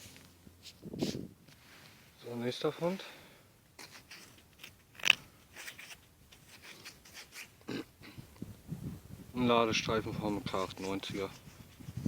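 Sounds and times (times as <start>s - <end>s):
soil crunching and scraping: 3.8s - 8.2s, 9.4s - 12.0s.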